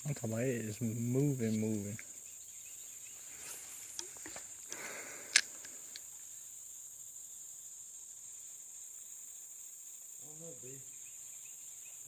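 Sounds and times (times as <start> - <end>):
insects droning: 0.0 - 12.0
rustle: 0.0 - 12.0
sharp clicks: 4.0 - 6.1.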